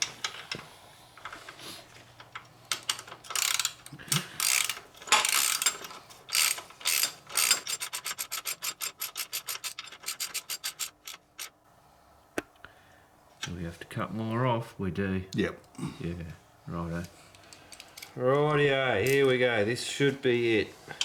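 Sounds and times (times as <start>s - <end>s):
hand ratchet clicking: 2.7s - 11.5s.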